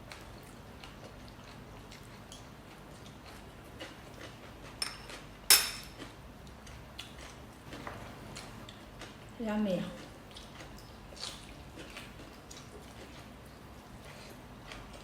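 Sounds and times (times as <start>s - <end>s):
cutlery clatter: 4.8s - 6.0s
cutlery clinking on dishes: 4.8s - 6.0s.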